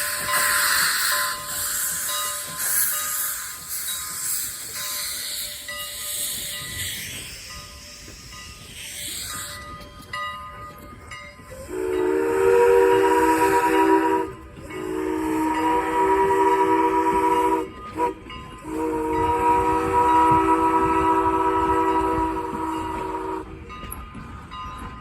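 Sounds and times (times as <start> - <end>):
steam locomotive whistle: 0.0 - 6.9, 11.5 - 23.7
steam hissing: 0.0 - 23.6.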